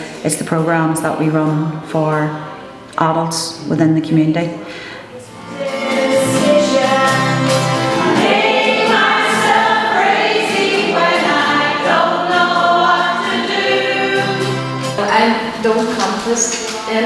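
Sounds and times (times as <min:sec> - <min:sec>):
choir singing: 0:02.0 - 0:02.8, 0:05.3 - 0:15.8
instrumental accompaniment: 0:05.1 - 0:17.0.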